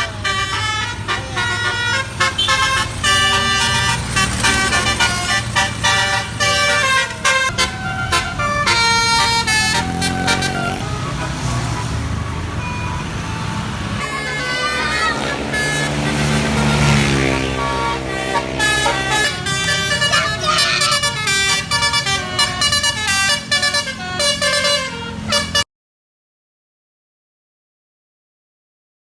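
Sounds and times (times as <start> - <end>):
bus engine running: 0.0 - 25.6
musical air horns melody: 0.0 - 25.7
road noise: 0.0 - 25.7.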